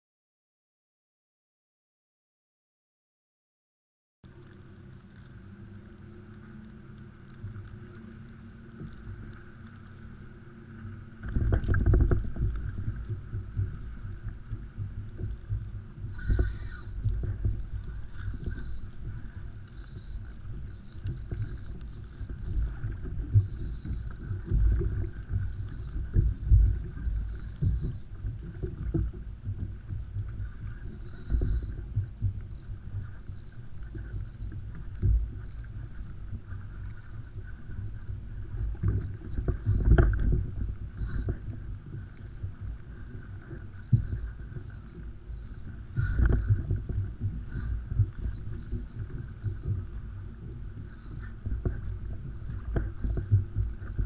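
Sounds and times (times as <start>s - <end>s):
water slapping against kayak hull: 10.8s - 54.0s
low thumps and knocks: 11.2s - 19.3s.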